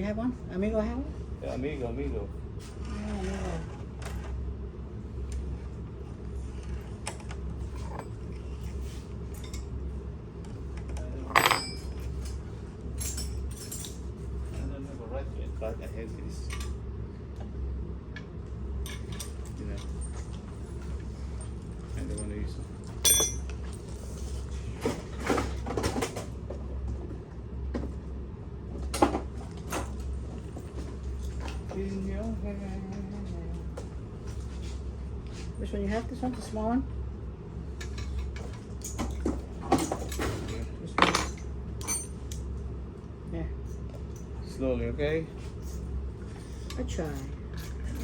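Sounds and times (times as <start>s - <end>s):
steady low hum: 0.0s - 48.0s
metal tools clinking: 11.2s - 12.4s, 18.9s - 20.2s, 21.9s - 23.8s, 37.8s - 42.2s
metal hand tools clinking: 23.0s - 23.5s.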